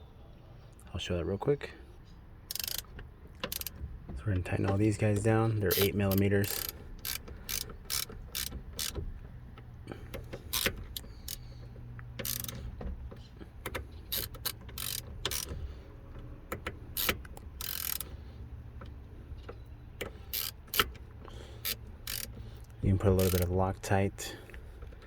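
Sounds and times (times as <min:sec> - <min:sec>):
ratchet wrench clicking: 0:02.5 - 0:03.8, 0:05.7 - 0:09.0, 0:10.1 - 0:11.6, 0:12.2 - 0:12.7, 0:13.7 - 0:15.6, 0:16.5 - 0:18.2, 0:20.0 - 0:21.0, 0:21.6 - 0:23.5.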